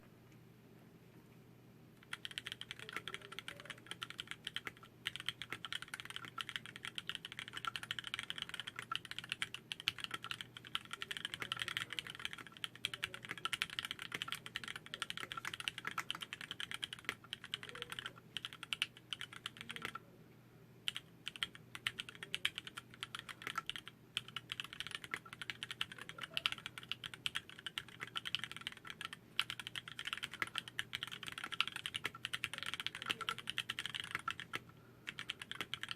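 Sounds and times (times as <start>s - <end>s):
fast typing on mechanical keyboard: 2.0s - 20.0s, 20.9s - 35.9s.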